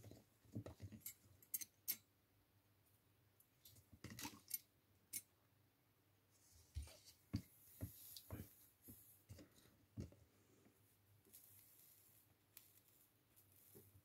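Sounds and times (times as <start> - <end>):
small tools clicking and tapping: 0.6 - 2.1.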